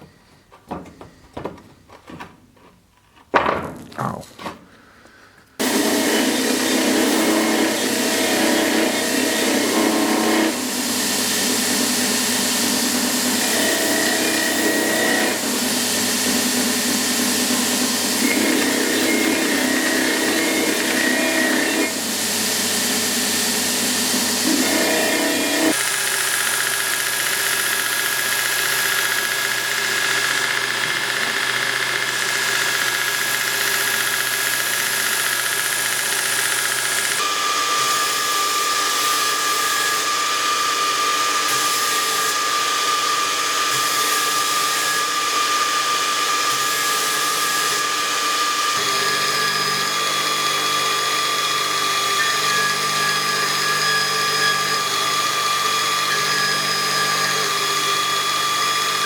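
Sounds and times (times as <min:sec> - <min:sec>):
workshop machine motor whining: 0:16.3 - 0:37.9.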